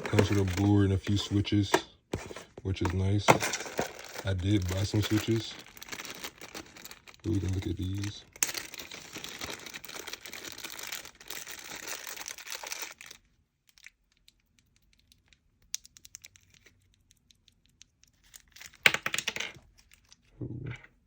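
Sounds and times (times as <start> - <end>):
plastic packaging crinkling and tearing: 0.0 - 13.9
rustling: 2.1 - 13.1.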